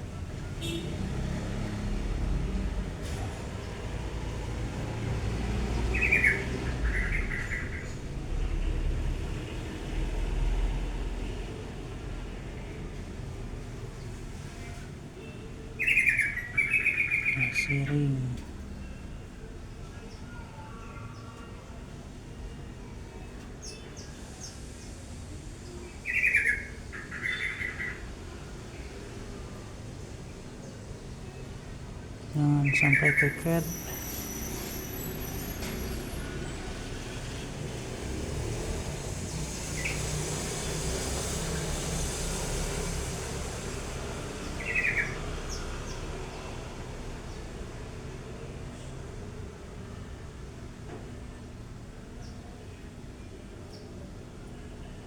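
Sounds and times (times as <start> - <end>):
bird chirping and harsh calls: 32.4 - 35.5.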